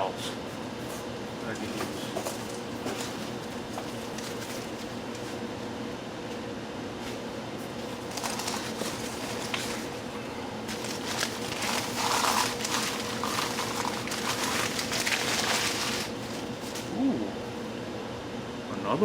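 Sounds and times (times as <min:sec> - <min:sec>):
packing material rustling: 0:02.3 - 0:05.0, 0:07.8 - 0:16.9.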